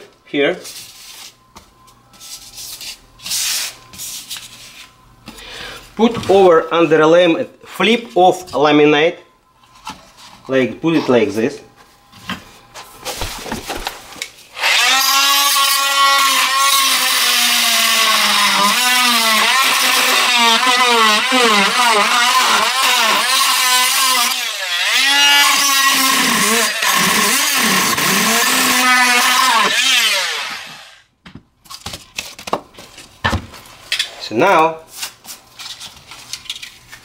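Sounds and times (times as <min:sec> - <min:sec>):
oscillating multi-tool whining: 0:14.6 - 0:31.0.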